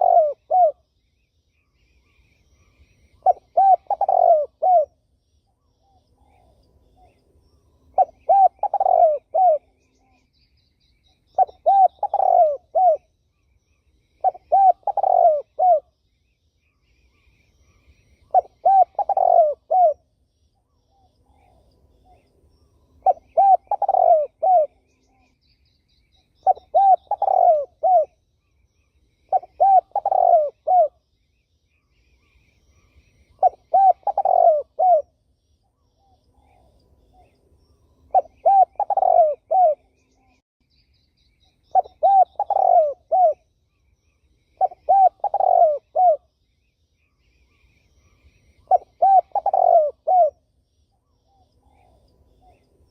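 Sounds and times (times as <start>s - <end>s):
turtle dove cooing: 0.0s - 0.9s, 1.7s - 7.2s, 7.9s - 10.4s, 11.1s - 13.1s, 14.0s - 16.0s, 17.1s - 20.1s, 23.0s - 25.4s, 26.2s - 28.2s, 29.2s - 31.0s, 32.1s - 35.2s, 38.0s - 40.4s, 41.4s - 43.5s, 44.4s - 46.3s, 47.4s - 52.9s.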